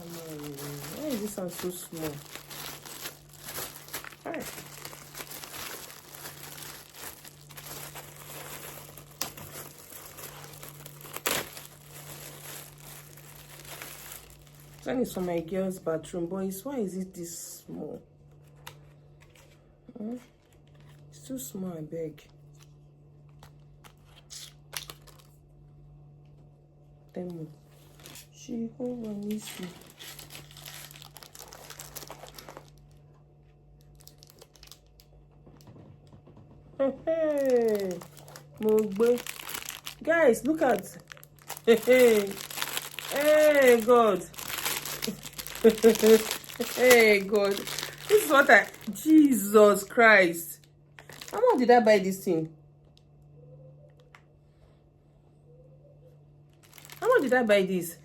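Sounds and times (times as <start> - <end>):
packaging crinkling: 0.0 - 15.5, 23.3 - 25.4, 29.0 - 35.2, 37.3 - 49.6, 50.9 - 52.0, 56.5 - 57.7
steady low hum: 0.0 - 58.0.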